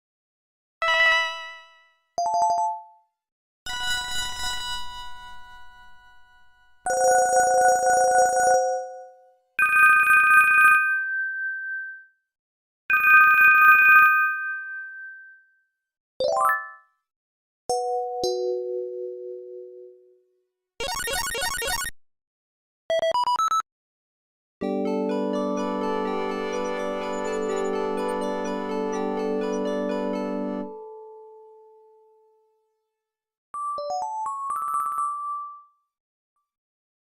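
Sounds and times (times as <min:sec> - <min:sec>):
electronic phone ringtones: 0:26.1 - 0:29.6.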